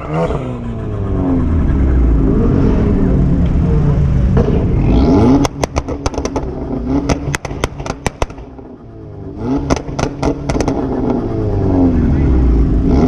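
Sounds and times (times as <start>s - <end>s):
car engine revving: 0.0s - 13.0s
exhaust pops and crackles: 4.3s - 11.3s.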